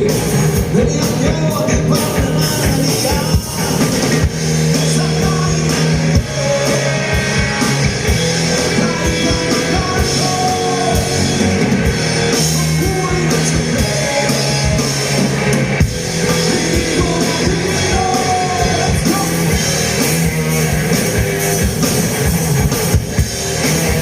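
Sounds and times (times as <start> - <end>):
bass notes: 0.0 - 24.0
electric guitar: 0.0 - 24.0
person singing: 8.6 - 11.5, 12.3 - 15.0, 16.4 - 19.6.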